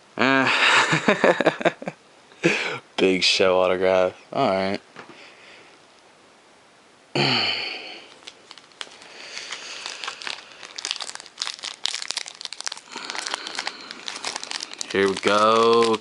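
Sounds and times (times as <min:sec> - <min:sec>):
wrapper crinkling and rustling: 0:08.1 - 0:16.0.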